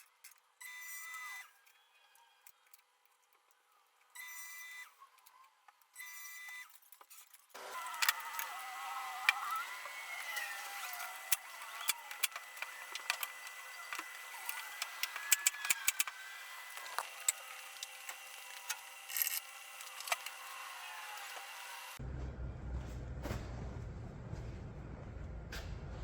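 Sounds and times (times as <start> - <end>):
low rumble: 22.0 - 26.0.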